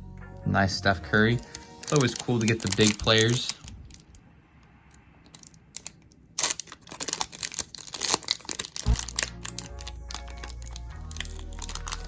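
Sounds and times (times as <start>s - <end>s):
wrapper crinkling and tearing: 1.4s - 4.2s, 5.3s - 12.0s.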